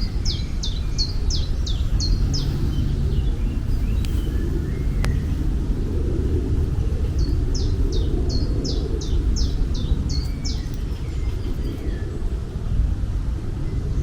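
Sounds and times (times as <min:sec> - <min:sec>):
bird singing high sliding notes: 0:00.0 - 0:05.9
steady low rumble: 0:00.0 - 0:14.0.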